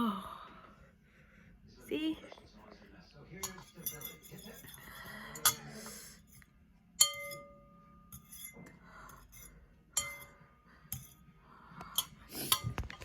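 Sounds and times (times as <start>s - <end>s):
dishware clinking: 3.3s - 5.8s, 7.0s - 11.2s.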